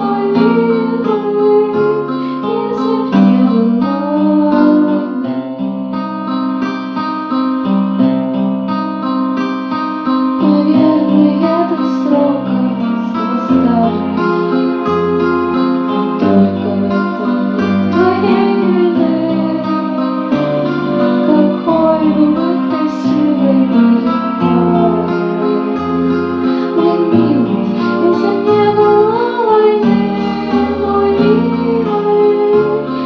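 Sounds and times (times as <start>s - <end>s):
woman singing: 0.0s - 5.6s, 10.4s - 14.8s, 15.9s - 20.4s, 21.2s - 25.6s, 26.5s - 33.0s
guitar accompaniment: 0.0s - 33.0s.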